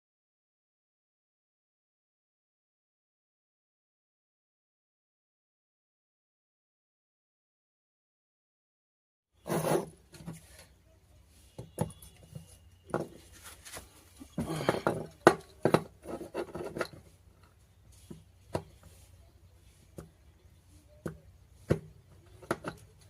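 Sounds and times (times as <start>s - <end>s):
small tools clicking and scraping: 11.5s - 23.0s.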